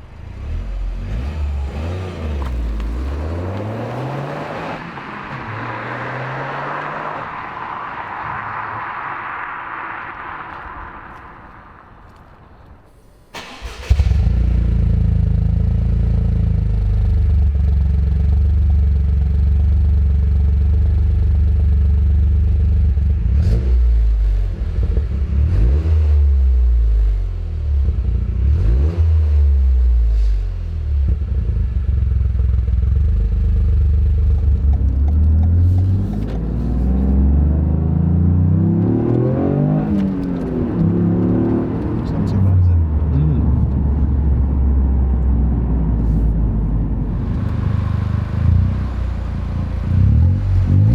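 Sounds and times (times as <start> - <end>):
car engine idling and revving: 0.0 - 50.9
car engine starting: 0.0 - 50.9.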